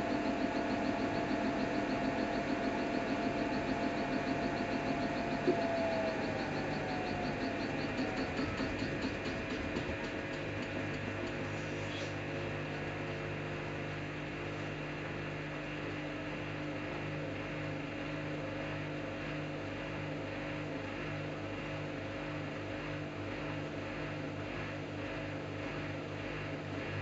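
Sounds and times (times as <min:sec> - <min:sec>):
washing machine humming: 0:00.0 - 0:14.8, 0:23.4 - 0:27.0.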